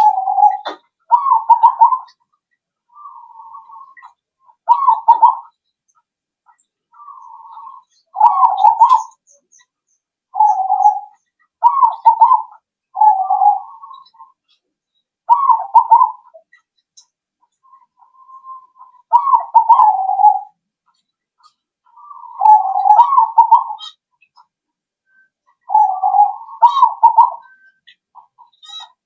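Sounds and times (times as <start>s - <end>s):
dove cooing: 0.0s - 2.2s, 2.9s - 5.5s, 7.0s - 9.2s, 10.3s - 14.4s, 15.3s - 16.5s, 17.8s - 20.6s, 21.9s - 24.0s, 25.5s - 28.9s.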